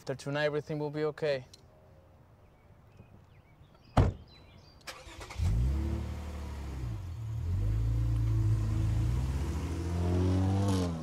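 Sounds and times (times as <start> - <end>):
sharp thump: 4.0 - 4.2
car engine starting and revving: 4.9 - 11.0.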